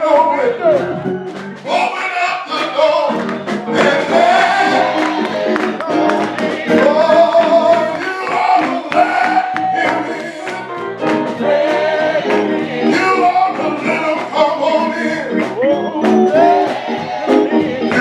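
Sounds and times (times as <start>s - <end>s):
church band playing: 0.0s - 18.0s.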